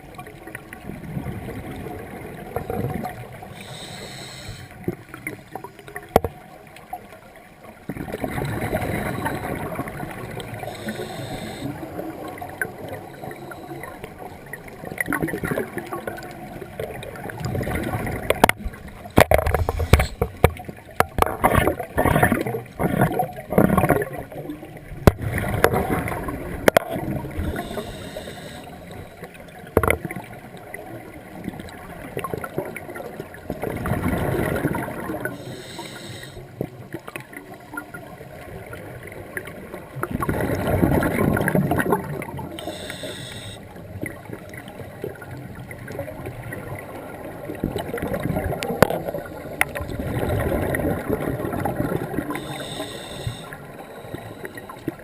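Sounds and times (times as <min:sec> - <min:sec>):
regulator inhale hiss: 0:03.5 - 0:04.8, 0:10.6 - 0:12.0, 0:19.3 - 0:20.4, 0:27.4 - 0:29.3, 0:35.2 - 0:36.6, 0:42.6 - 0:43.6, 0:52.2 - 0:55.0
exhaled air bubbling: 0:07.9 - 0:30.3, 0:31.4 - 0:55.0.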